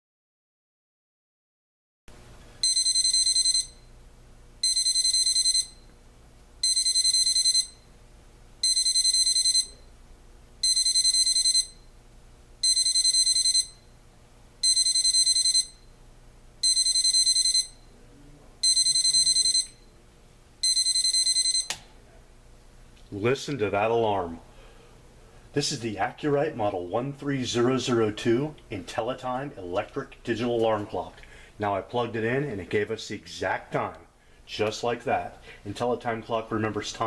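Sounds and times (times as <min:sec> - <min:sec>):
alarm clock beeping: 0:02.6 - 0:03.9, 0:04.6 - 0:05.9, 0:06.6 - 0:07.9, 0:08.6 - 0:09.8, 0:10.6 - 0:11.9, 0:12.6 - 0:13.9, 0:14.6 - 0:15.9, 0:16.6 - 0:17.8, 0:18.6 - 0:19.9, 0:20.6 - 0:21.7.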